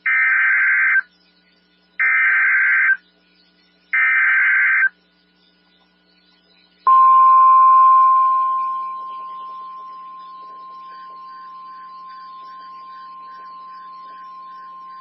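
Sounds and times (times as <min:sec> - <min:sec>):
steady warning alarm tone: 0:06.9 - 0:15.0
buzzing digital data bursts: 0:07.1 - 0:15.0.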